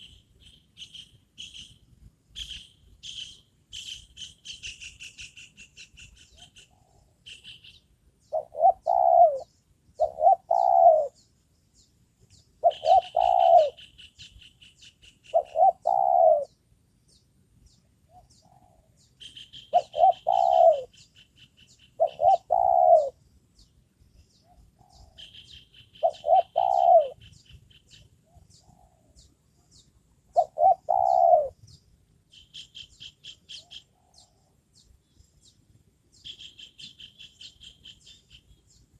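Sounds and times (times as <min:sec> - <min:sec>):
dove cooing: 0:06.3 - 0:07.2, 0:08.3 - 0:11.2, 0:12.6 - 0:13.9, 0:15.3 - 0:16.6, 0:18.1 - 0:19.0, 0:19.7 - 0:21.0, 0:22.0 - 0:23.2, 0:24.4 - 0:27.4, 0:28.2 - 0:29.2, 0:30.3 - 0:31.6.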